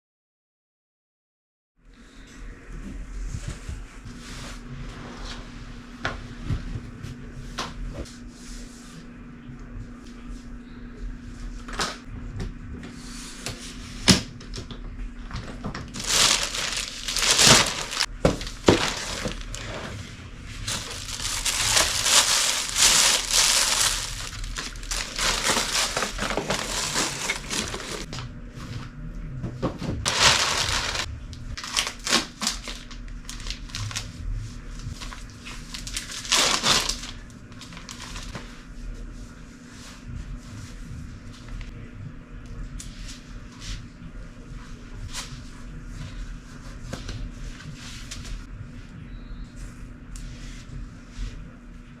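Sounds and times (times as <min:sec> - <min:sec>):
packaging crinkling and rustling: 0:15.9 - 0:20.0, 0:20.6 - 0:28.2, 0:30.1 - 0:34.1, 0:34.9 - 0:38.5.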